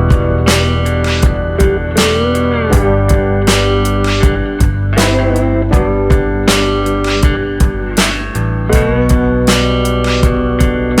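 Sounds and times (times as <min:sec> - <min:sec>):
blues slide guitar over a beat: 0:00.0 - 0:11.0.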